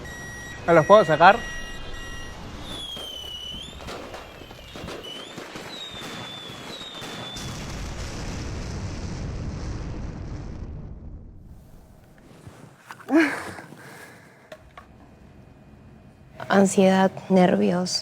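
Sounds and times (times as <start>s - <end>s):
firework whistles: 0.0s - 7.9s
fireworks crackling: 0.0s - 12.8s.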